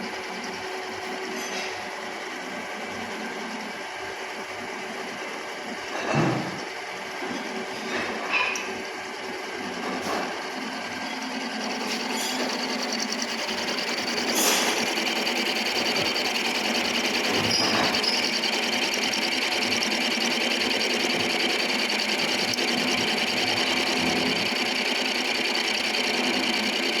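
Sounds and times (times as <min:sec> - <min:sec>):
milling machine rattling: 0:09.6 - 0:27.0.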